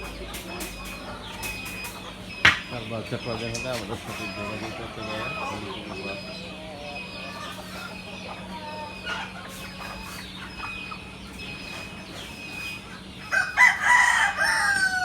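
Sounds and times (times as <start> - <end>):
chickens clucking: 0.0 - 15.0
rooster crowing: 13.2 - 15.0.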